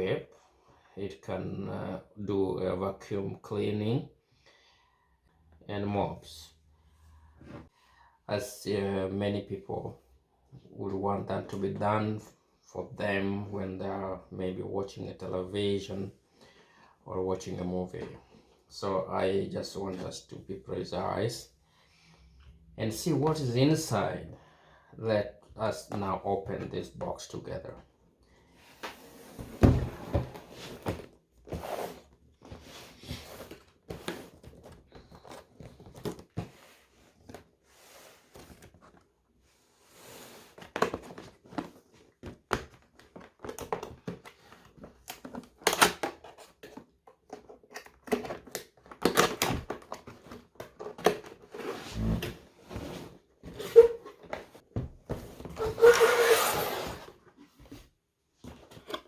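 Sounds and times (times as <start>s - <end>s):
packaging knocks and scrapes: 28.8s - 39.0s.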